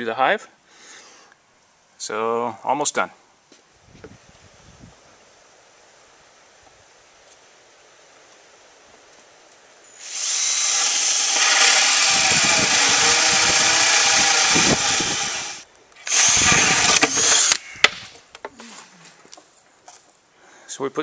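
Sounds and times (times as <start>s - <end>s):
power drill driving screws: 10.0s - 17.6s.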